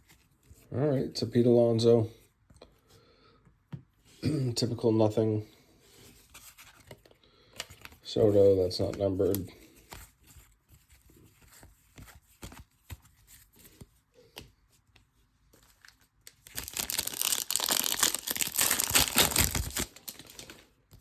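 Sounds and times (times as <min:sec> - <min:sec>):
packaging crinkling and tearing: 0:15.6 - 0:21.0.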